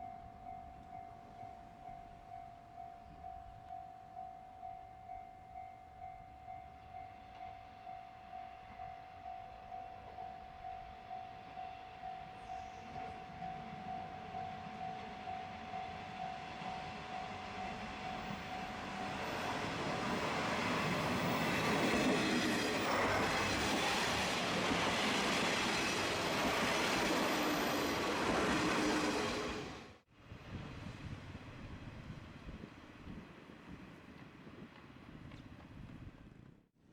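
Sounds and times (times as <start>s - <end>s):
diesel train passing: 8.3s - 32.4s.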